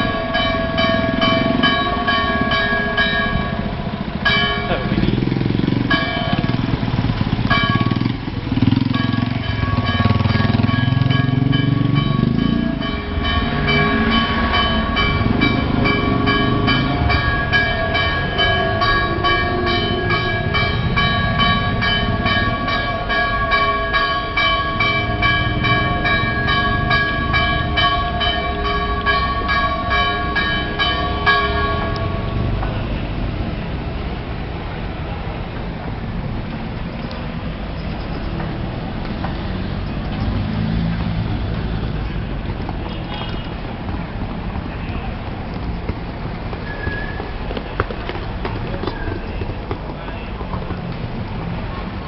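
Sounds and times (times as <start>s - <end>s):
church bells ringing: 0.0s - 33.0s.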